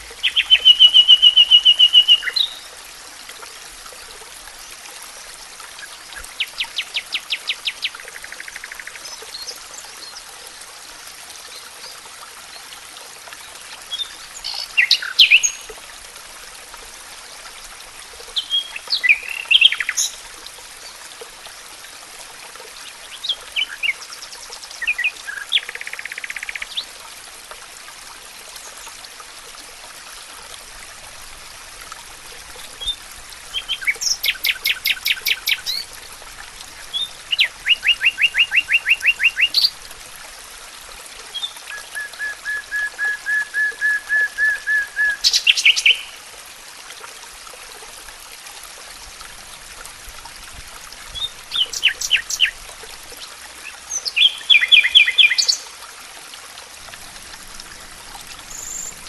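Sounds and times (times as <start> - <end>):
songbirds singing: 0.2 - 2.7, 18.4 - 20.2, 32.8 - 35.9, 36.9 - 39.8, 41.3 - 46.2, 51.1 - 52.6, 53.2 - 55.6, 58.3 - 59.0.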